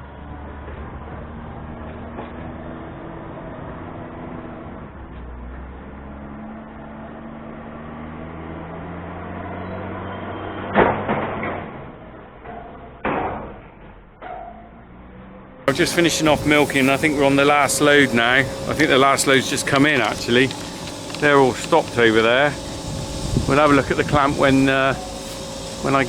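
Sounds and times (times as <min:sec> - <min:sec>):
machine humming: 0:15.7 - 0:26.0.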